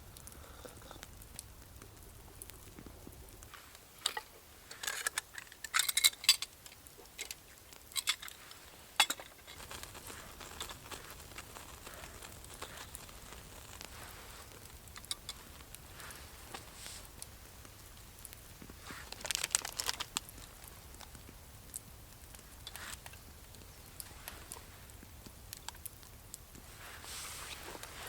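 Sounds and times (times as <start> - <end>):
light clinks and knocks: 4.0 - 6.6.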